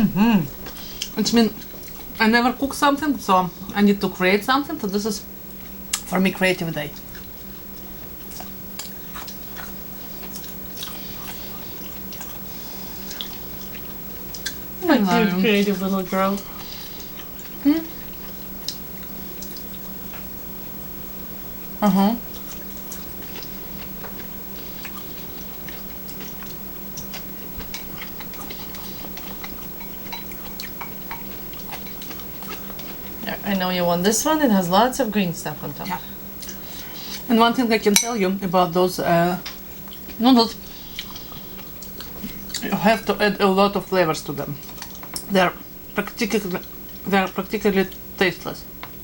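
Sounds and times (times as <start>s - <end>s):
person chewing food: 0.0s - 2.2s, 7.0s - 14.8s, 16.4s - 20.4s, 22.3s - 33.2s, 36.3s - 37.3s, 39.4s - 42.8s, 44.6s - 45.3s
faint hum: 0.0s - 49.0s.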